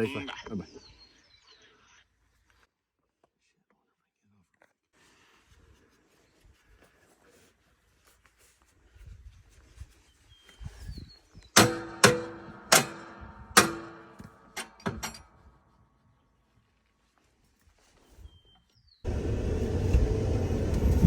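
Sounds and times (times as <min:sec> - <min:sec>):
sharp ringing knocks: 0:11.6 - 0:15.3.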